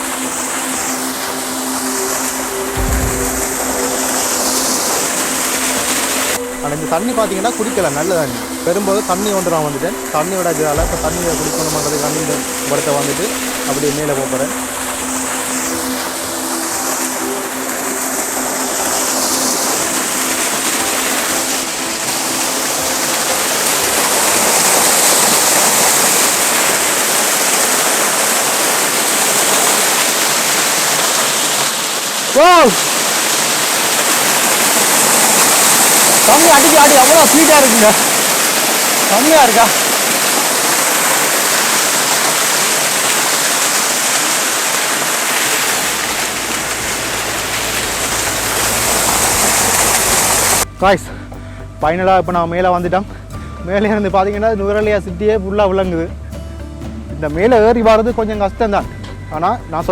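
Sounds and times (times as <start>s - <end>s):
waterfall stream rushing: 0.0s - 50.8s
low rumble: 2.5s - 5.6s, 10.8s - 12.8s.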